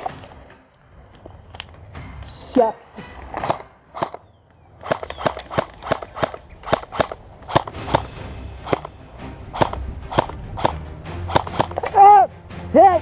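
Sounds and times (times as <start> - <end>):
airsoft guns firing: 4.8 - 8.9, 9.6 - 11.8.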